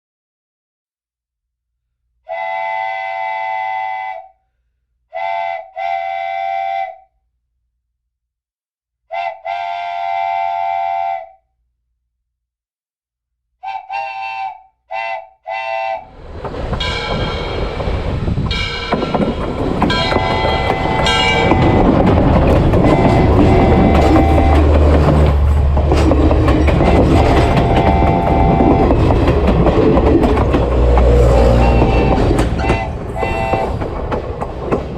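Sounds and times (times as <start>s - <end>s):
train horn blasts: 2.3s - 4.3s, 5.1s - 7.1s, 9.1s - 11.4s, 13.6s - 16.1s, 22.7s - 25.4s, 26.6s - 29.5s, 30.3s - 34.0s
train passing: 16.0s - 34.9s.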